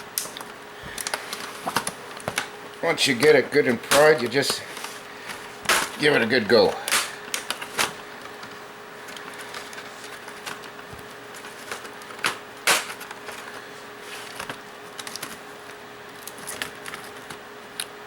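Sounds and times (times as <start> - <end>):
plastic clips clicking and snapping: 3.8 - 4.2, 6.8 - 8.5, 11.8 - 13.2.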